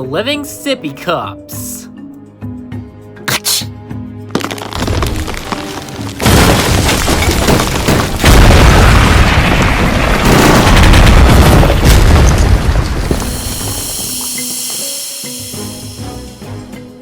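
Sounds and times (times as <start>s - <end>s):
background music: 0.0s - 7.0s, 13.0s - 17.0s
loud booming rumble: 6.2s - 13.8s.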